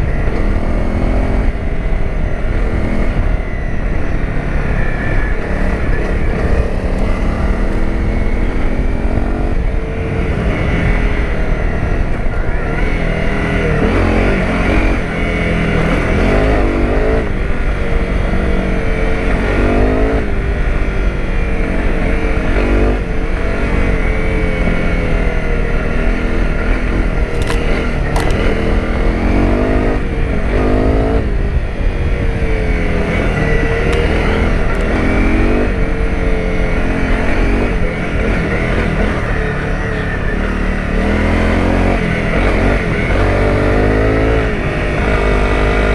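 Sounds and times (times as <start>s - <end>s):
motorcycle engine revving: 0.0s - 45.9s
sharp clicks: 27.3s - 28.6s.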